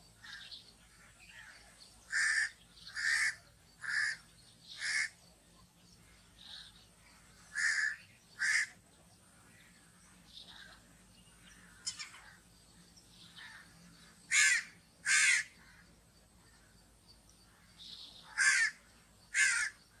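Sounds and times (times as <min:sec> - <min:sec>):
crow cawing: 0:01.4 - 0:04.2, 0:04.8 - 0:05.2, 0:07.5 - 0:08.8, 0:13.4 - 0:13.7, 0:14.3 - 0:15.9, 0:18.2 - 0:19.8.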